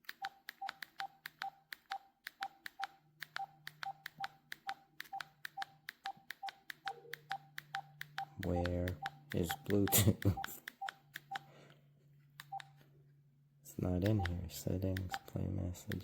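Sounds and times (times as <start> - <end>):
phone key clicks and beeps: 0.1 - 11.5, 12.4 - 12.8, 14.0 - 15.3
faint low hum: 3.0 - 16.0.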